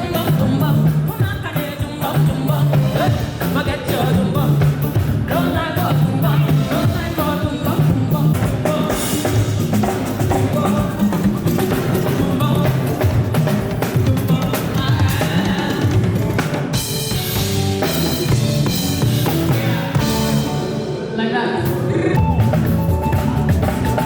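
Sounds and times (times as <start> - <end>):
person singing: 0.0 - 16.6
pop song over a pa: 0.0 - 24.0.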